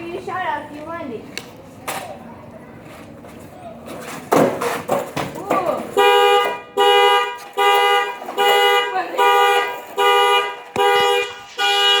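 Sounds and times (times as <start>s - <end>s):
car alarm horn honking: 6.0s - 12.0s.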